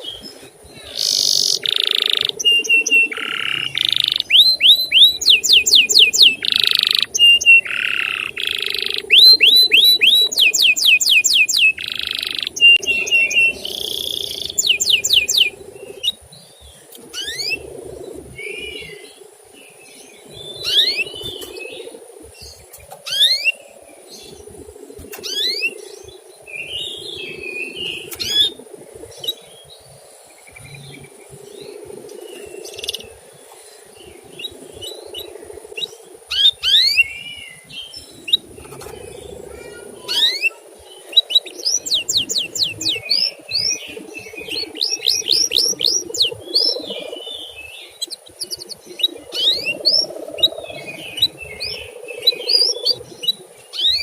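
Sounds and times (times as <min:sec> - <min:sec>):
canary chirping and singing: 0:00.0 - 0:19.0, 0:20.3 - 0:21.8, 0:22.4 - 0:23.6, 0:25.1 - 0:25.8, 0:26.5 - 0:28.6, 0:34.1 - 0:54.0
steady low hum: 0:11.7 - 0:54.0.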